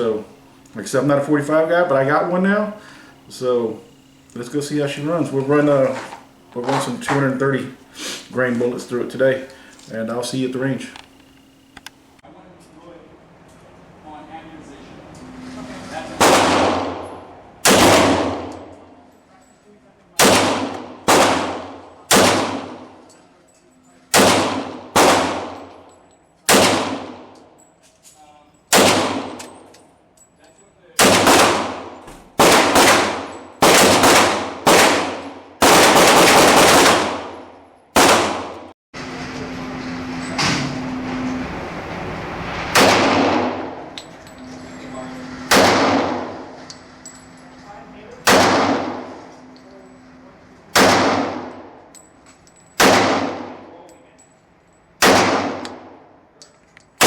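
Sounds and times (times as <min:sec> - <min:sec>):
steady hum: 0:00.0 - 0:52.4
pistol shots: 0:16.2 - 0:18.8, 0:20.2 - 0:23.0, 0:24.1 - 0:25.8, 0:26.5 - 0:27.4, 0:28.7 - 0:29.6, 0:31.0 - 0:38.7, 0:42.7 - 0:43.8, 0:45.5 - 0:46.6, 0:48.2 - 0:49.2, 0:50.7 - 0:51.8, 0:52.8 - 0:53.7, 0:55.0 - 0:56.0.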